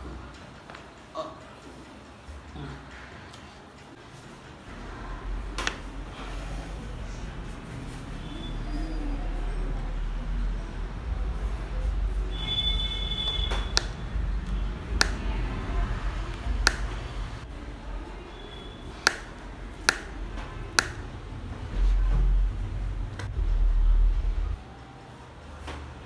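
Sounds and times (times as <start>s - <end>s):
joints cracking: 11.7s - 17.8s, 18.6s - 23.4s.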